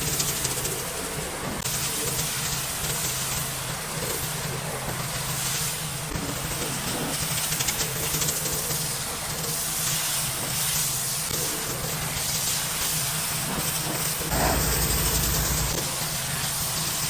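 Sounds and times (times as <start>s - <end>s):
pressure washer motor humming: 14.3s - 15.8s.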